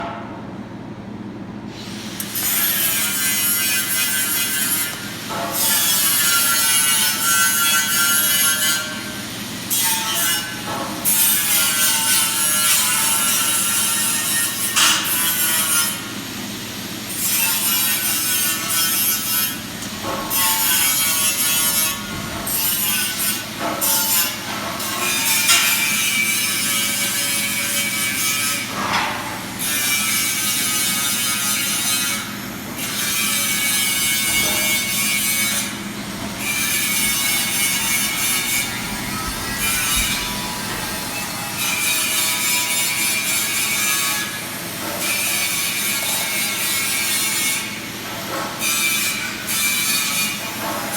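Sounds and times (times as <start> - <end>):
welding arc: 33.4 - 44.0.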